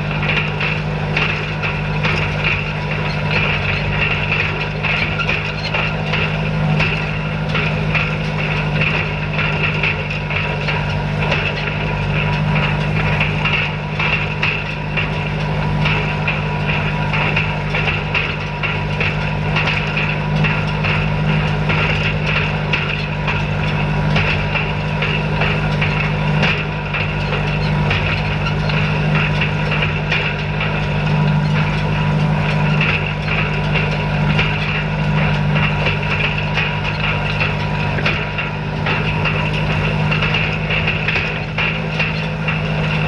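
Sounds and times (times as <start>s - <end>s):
rapid clatter of knocks: 0.0s - 43.0s
tractor engine running: 0.0s - 43.0s.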